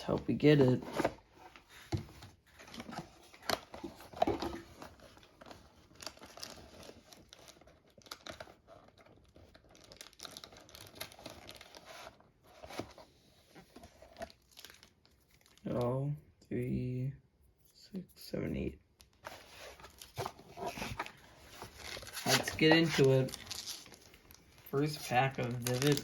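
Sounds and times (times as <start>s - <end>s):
foil packs crinkling: 5.9s - 11.8s, 19.9s - 26.0s.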